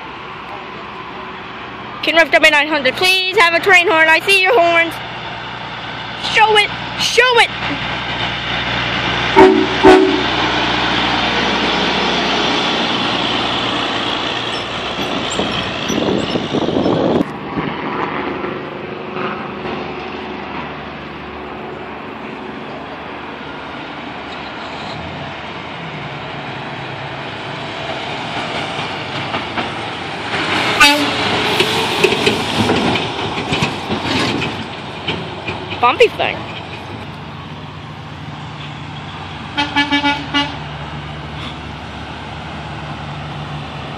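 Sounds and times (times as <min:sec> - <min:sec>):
traffic noise: 0:00.0 - 0:43.9
truck horn blasts: 0:09.3 - 0:10.6, 0:30.8 - 0:31.7, 0:39.6 - 0:40.6.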